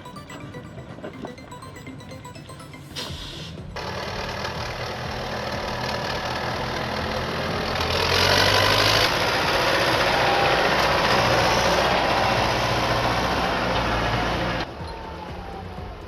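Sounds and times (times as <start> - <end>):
heavy truck engine running: 3.8 - 14.7.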